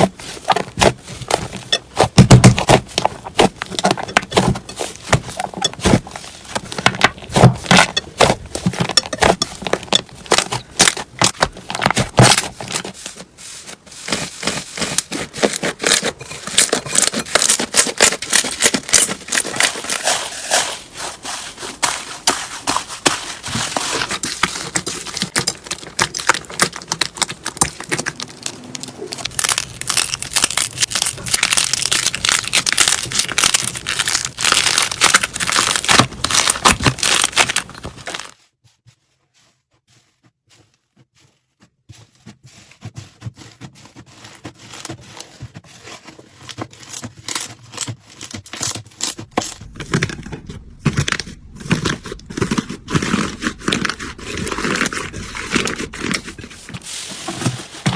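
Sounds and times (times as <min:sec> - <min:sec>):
slime clicking and popping: 0:25.4 - 0:37.6.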